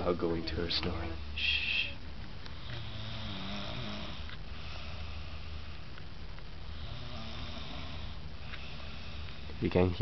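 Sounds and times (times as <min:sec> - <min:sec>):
woman snoring loudly: 0:02.6 - 0:04.9, 0:06.7 - 0:08.2.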